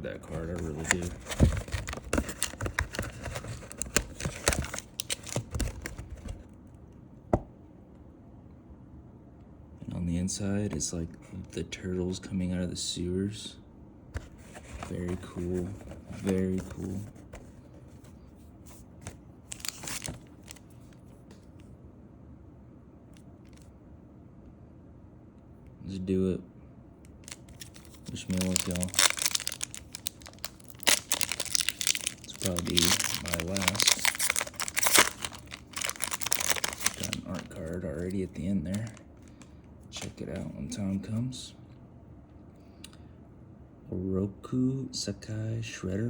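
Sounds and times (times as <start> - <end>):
faint room hum: 0.0 - 46.0
foil wrapper crinkling: 0.3 - 6.1, 19.5 - 20.6, 27.2 - 39.0.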